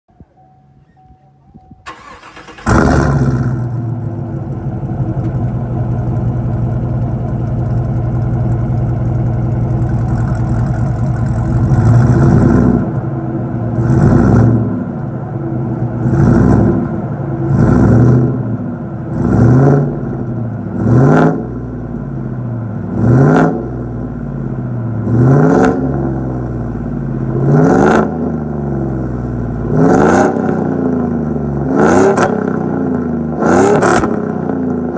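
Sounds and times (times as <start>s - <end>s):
pickup engine cranking: 1.8s - 3.8s
pickup engine idling and revving: 1.9s - 34.9s.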